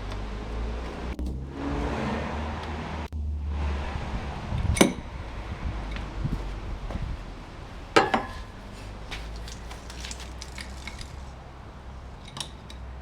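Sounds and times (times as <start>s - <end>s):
hand tools clinking on metal: 8.0s - 13.0s
light metal ticks: 12.0s - 13.0s.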